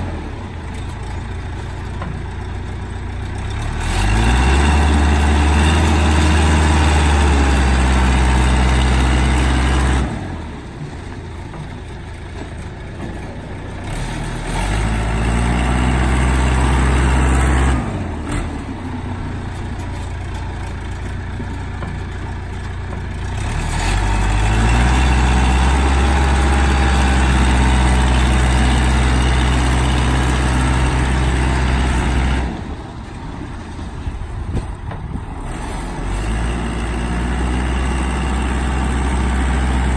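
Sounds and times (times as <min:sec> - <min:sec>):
diesel engine revving: 0:00.0 - 0:39.9.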